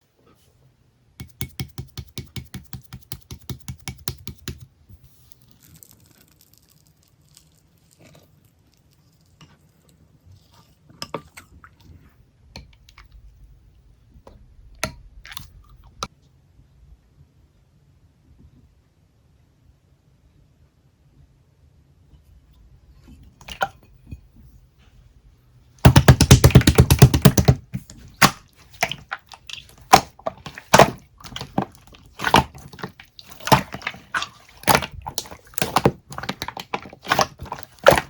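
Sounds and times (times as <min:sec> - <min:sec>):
sharp knocks: 0:25.9 - 0:28.4.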